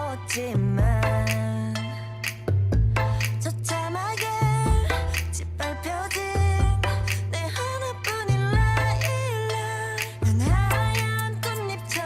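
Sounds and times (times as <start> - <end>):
deep bass: 0.0 - 11.9
woman singing over a beat: 3.4 - 12.0.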